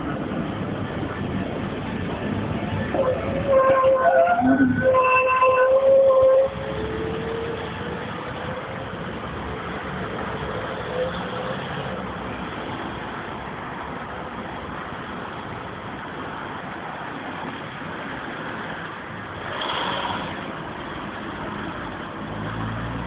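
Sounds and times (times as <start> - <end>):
tram rolling rumble on rails: 0.0 - 23.0
tram wheel squeal: 2.9 - 8.0.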